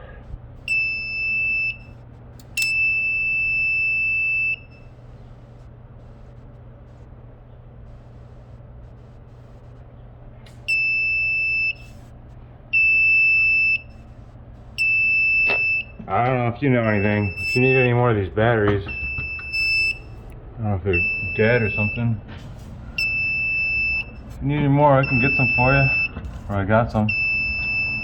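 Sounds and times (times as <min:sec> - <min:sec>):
low hum: 0:00.0 - 0:15.2
smoke alarm beeping: 0:00.6 - 0:05.1, 0:10.5 - 0:12.1, 0:12.7 - 0:14.1, 0:14.7 - 0:18.1, 0:18.8 - 0:20.3, 0:20.9 - 0:22.2, 0:22.8 - 0:24.4, 0:25.0 - 0:28.0.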